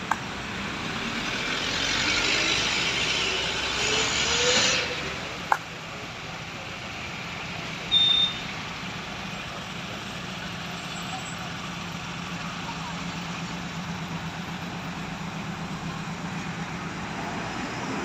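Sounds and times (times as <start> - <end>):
short high-pitched beep: 7.9 - 8.4.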